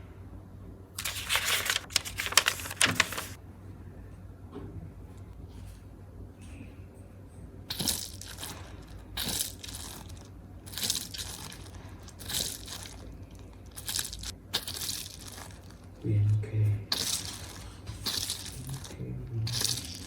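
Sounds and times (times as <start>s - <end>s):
faint low hum: 0.0s - 20.0s
crunchy slime squeezed by hand: 7.7s - 15.9s.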